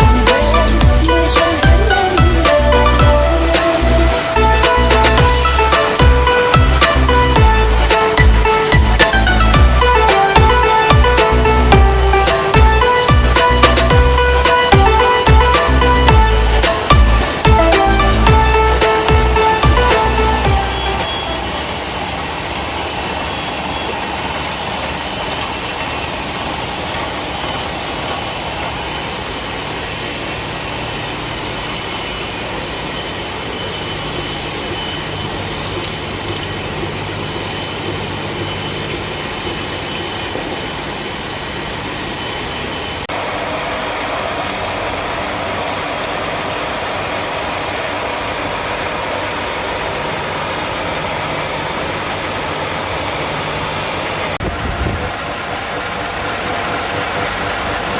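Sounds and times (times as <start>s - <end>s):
cnc machine cutting: 0.0s - 57.9s.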